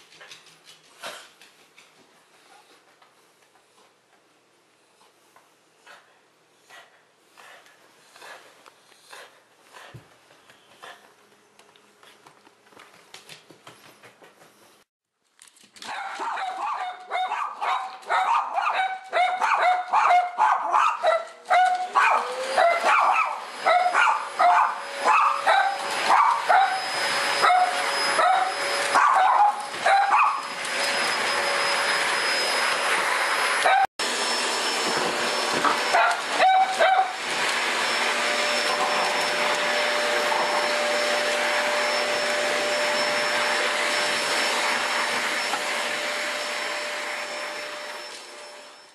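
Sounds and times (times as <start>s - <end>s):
small dogs barking: 15.8s - 26.8s, 27.4s - 30.4s, 35.7s - 37.2s
vacuum cleaner motor whine: 21.7s - 48.9s.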